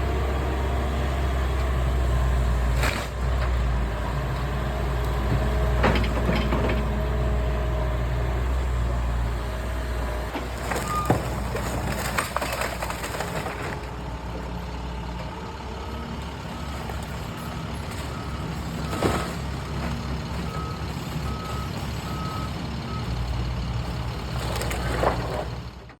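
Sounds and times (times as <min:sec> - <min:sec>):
excavator diesel engine: 0:00.0 - 0:26.0
cracks and crashes of breaking material: 0:10.4 - 0:14.0.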